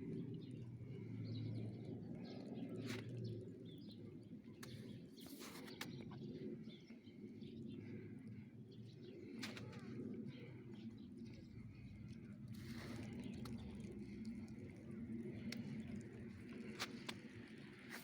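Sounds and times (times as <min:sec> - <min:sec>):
low hum of street ambience: 0:07.2 - 0:18.0.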